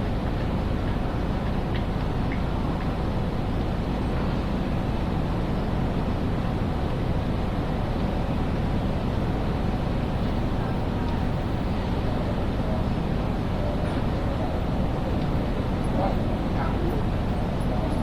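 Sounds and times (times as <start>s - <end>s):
chatter of many people: 11.9s - 18.0s.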